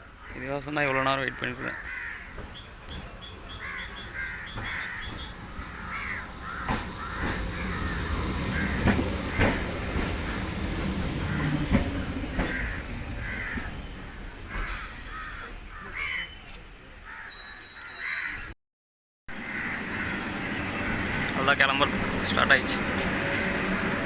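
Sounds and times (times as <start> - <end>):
crows cawing: 0.2 - 2.5, 3.5 - 9.8, 12.3 - 13.7, 14.6 - 16.2, 19.4 - 20.2
train rumble: 2.2 - 17.2, 19.3 - 24.0
high steady squeal: 10.6 - 18.5.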